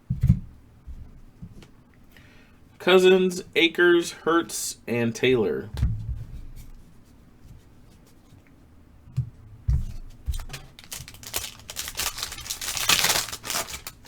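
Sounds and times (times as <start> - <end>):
foil pack crinkling and tearing: 10.4 - 14.0
cards rustling: 10.5 - 14.0.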